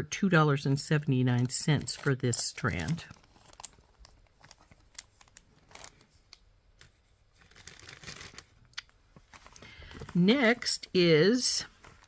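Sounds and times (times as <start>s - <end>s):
packaging rustling: 1.4s - 10.5s.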